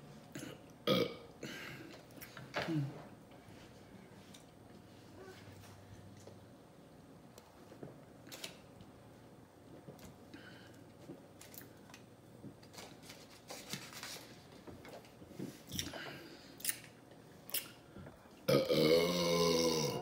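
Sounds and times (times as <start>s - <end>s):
loud burp: 0.4s - 1.7s, 18.5s - 20.0s.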